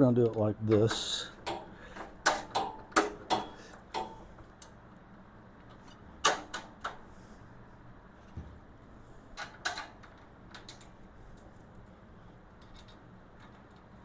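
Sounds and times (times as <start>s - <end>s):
steady low hum: 0.0s - 14.0s
clicks and knocks of metal parts: 0.2s - 4.8s, 5.6s - 7.0s, 9.3s - 11.5s, 12.5s - 14.0s.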